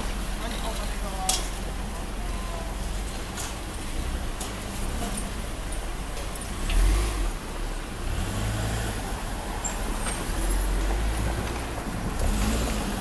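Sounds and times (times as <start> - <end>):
passing vehicle rumble: 6.5 - 13.0.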